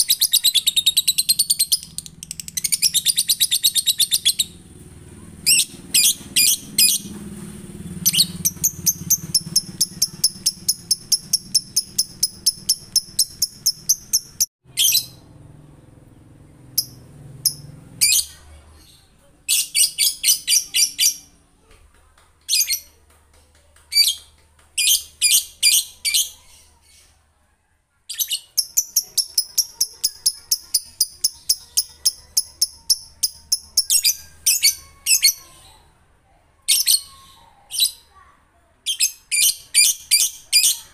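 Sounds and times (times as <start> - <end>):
lovebird rapid high chirps: 0.0 - 4.6, 5.4 - 7.1, 8.0 - 15.2, 16.7 - 18.9, 28.1 - 35.7, 38.9 - 40.9.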